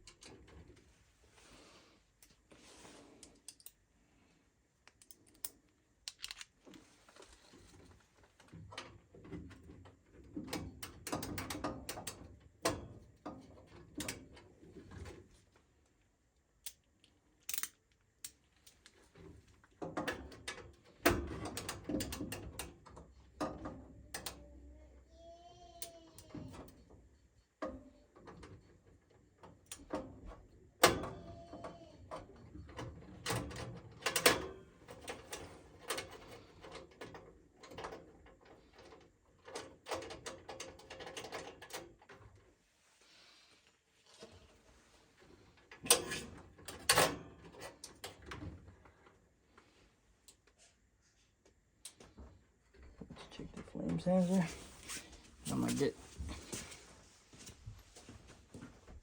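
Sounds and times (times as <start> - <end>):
tools clicking and knocking: 16.6 - 19.0, 19.8 - 24.4.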